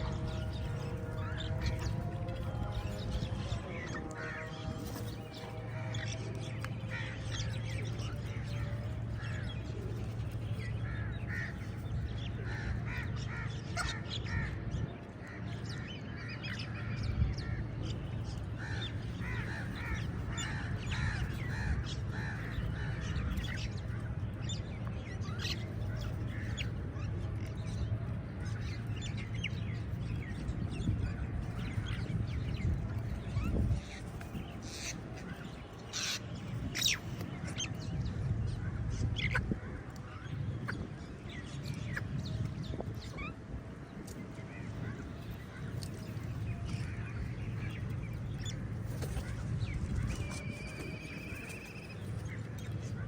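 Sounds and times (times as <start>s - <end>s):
steady low hum: 0.0s - 53.0s
crows cawing: 10.8s - 11.6s, 12.4s - 14.5s.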